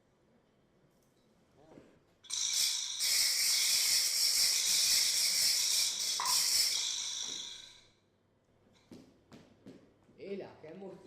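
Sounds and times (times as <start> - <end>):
steady hiss: 2.3 - 7.8.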